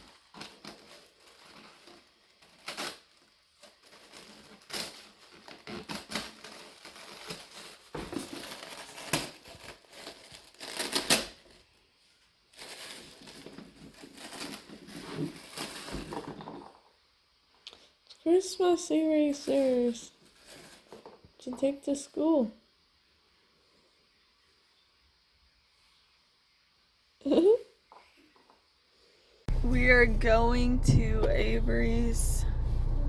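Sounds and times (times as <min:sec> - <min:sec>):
small objects clicking and crinkling: 0:00.0 - 0:11.8, 0:12.5 - 0:16.9.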